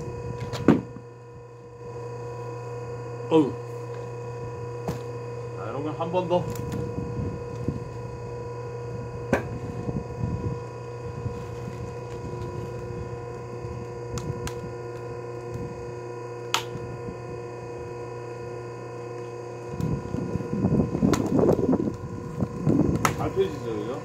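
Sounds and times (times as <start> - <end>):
log splitter motor humming: 0.0 - 24.0
wood cracking as it splits: 22.6 - 23.3.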